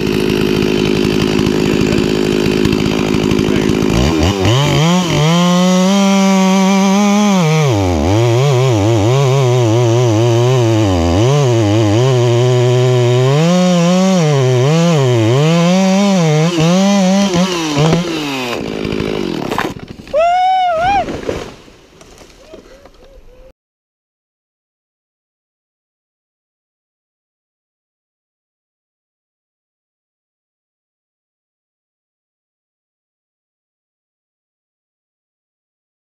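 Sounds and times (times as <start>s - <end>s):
chainsaw cutting wood: 0.0s - 23.4s.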